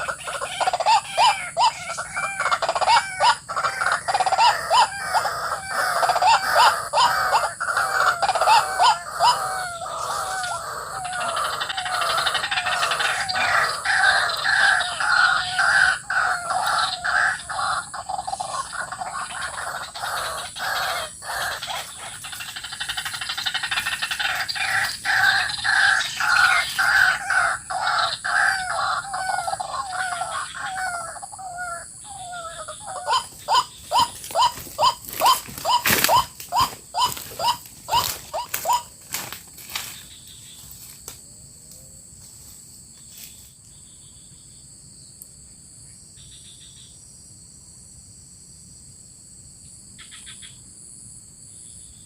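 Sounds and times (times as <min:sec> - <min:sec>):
bird croaking calls: 0:00.0 - 0:40.9.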